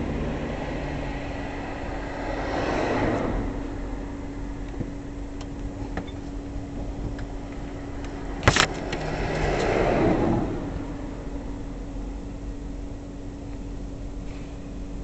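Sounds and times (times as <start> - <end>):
car passing: 0.0 - 4.6, 7.6 - 11.8
steady low hum: 0.0 - 15.0.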